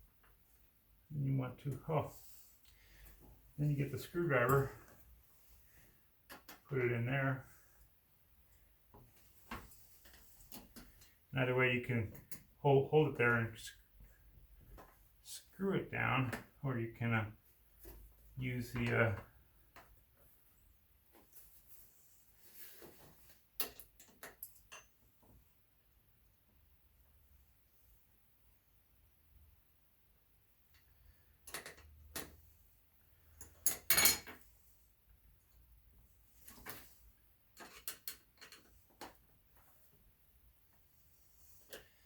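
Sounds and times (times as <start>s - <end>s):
soft handling sounds: 1.6s - 11.3s, 17.4s - 23.6s, 34.4s - 42.0s
metallic clinks and knocks: 37.6s - 38.8s.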